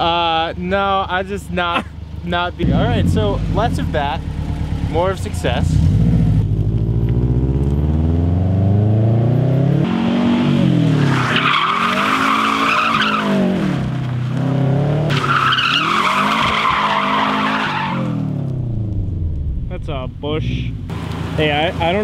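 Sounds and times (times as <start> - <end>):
car engine revving: 2.5 - 22.0
tyres squealing: 11.0 - 13.5, 15.1 - 18.2.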